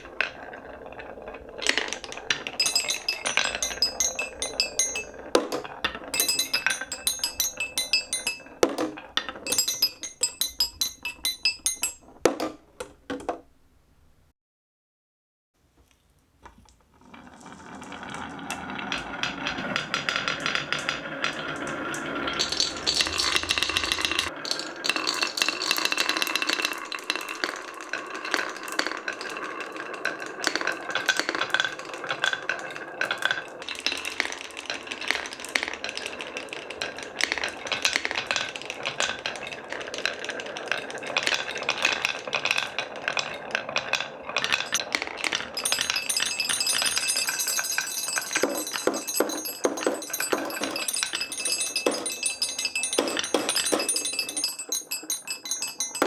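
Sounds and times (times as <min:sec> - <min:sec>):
marbles rattling down wooden tracks: 0:00.0 - 0:13.3, 0:17.2 - 0:56.0
marbles striking metallophone bars: 0:01.7 - 0:13.4, 0:22.2 - 0:24.3, 0:44.5 - 0:56.0.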